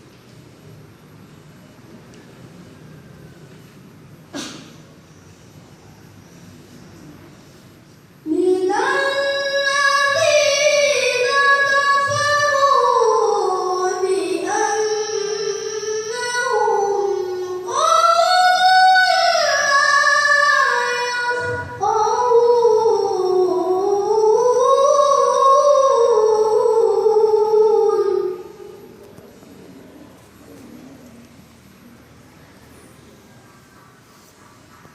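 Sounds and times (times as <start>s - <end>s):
child reciting melodically: 8.2s - 29.1s.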